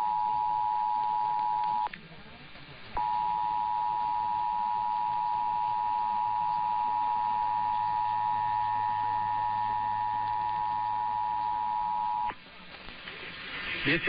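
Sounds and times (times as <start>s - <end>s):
continuous two-tone alert signal: 3.0s - 12.3s.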